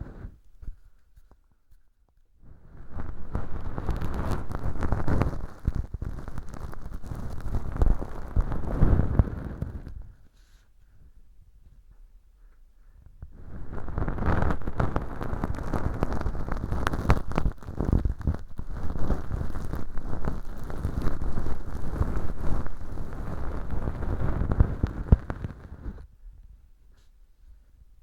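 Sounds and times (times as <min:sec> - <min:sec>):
earpick brushing microphone: 0:13.5 - 0:26.0.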